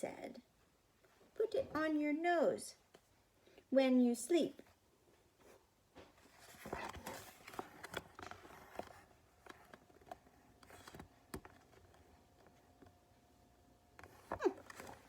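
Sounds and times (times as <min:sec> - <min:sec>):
book pages rustling: 0:05.4 - 0:13.0, 0:14.0 - 0:15.0
soft clicks of book handling: 0:05.4 - 0:13.0.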